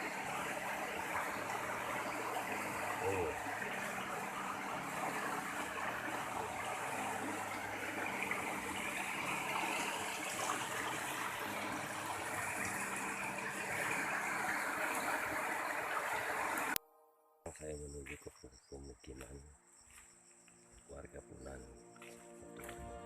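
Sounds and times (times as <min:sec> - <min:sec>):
river water rushing: 0:00.0 - 0:16.8.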